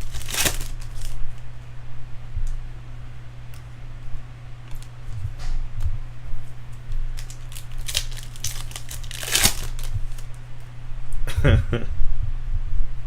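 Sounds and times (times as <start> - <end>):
cards sliding: 0.0 - 1.2, 7.2 - 10.4
wrapper crinkling and tearing: 0.0 - 1.3, 7.1 - 10.4.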